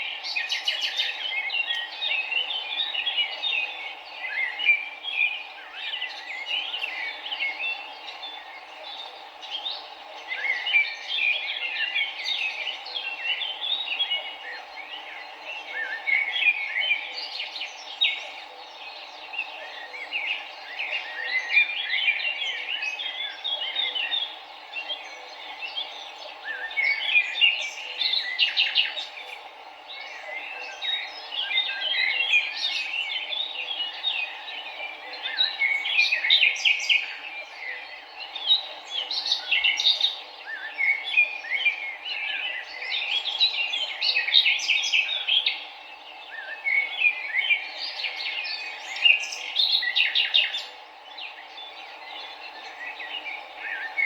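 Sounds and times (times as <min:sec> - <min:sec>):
songbirds chirping: 0:00.0 - 0:54.0.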